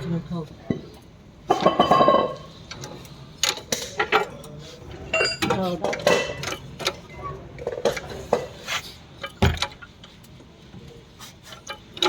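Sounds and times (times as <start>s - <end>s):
metal tools clinking: 5.1s - 6.6s.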